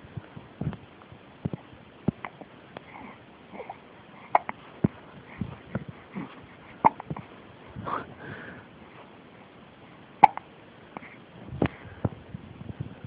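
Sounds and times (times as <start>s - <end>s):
baby hiccuping: 2.2s - 4.6s, 6.2s - 7.3s, 10.2s - 10.5s.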